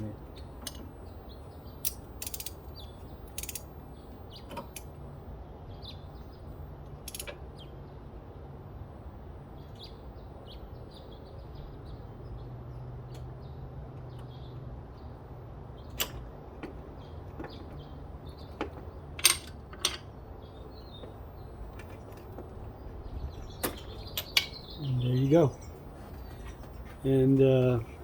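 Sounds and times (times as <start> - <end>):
ratchet wrench clicking: 1.8 - 2.6, 3.3 - 3.6.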